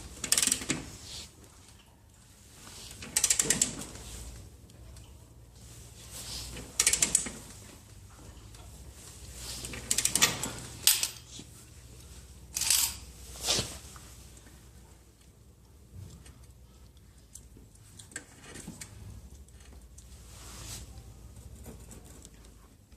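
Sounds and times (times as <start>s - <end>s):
metal clicking and clinking: 12.5s - 13.1s.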